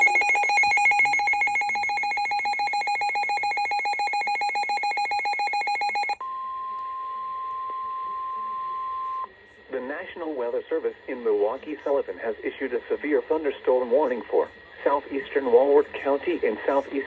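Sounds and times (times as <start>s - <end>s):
buzzy electronic alert beeping: 0.0s - 6.2s
steady alarm tone: 0.0s - 6.2s.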